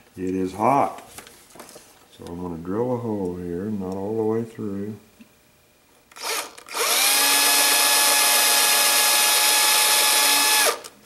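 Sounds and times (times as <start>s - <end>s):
electric drill drilling: 6.1s - 10.9s.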